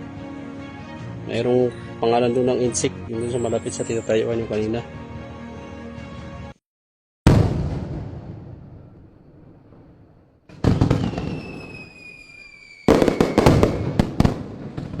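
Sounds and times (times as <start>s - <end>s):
firework bang: 7.2s - 15.0s
firework whistles gliding down: 10.7s - 14.3s.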